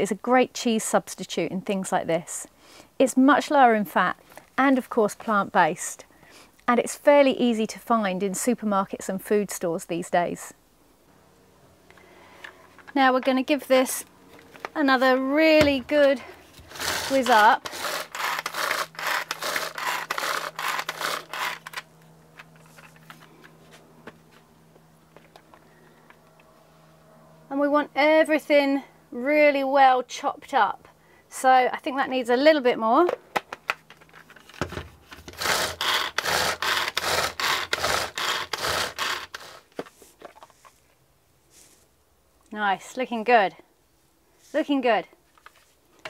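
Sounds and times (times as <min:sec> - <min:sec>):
hand chopper blades whirring: 0:15.6 - 0:21.9, 0:35.2 - 0:39.7.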